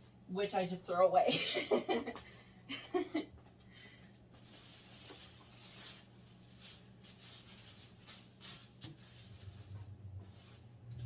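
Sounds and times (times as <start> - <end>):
plastic sheeting rustling: 4.2 - 11.0.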